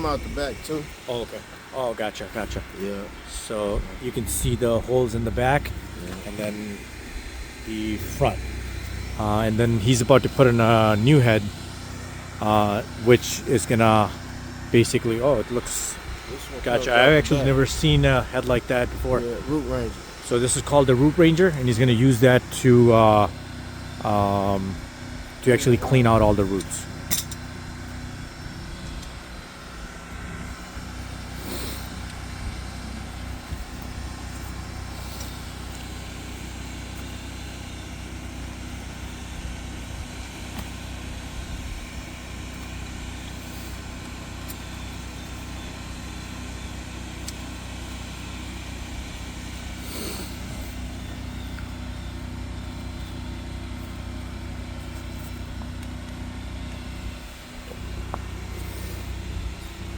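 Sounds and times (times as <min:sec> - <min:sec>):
engine running steadily: 0:00.0 - 0:59.9.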